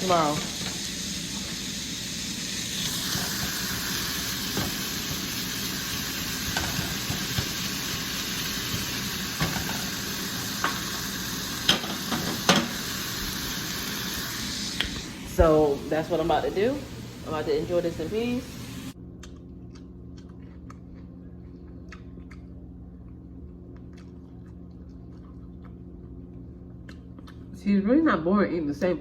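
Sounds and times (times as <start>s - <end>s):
meat sizzling in a frying pan: 0.0s - 19.0s.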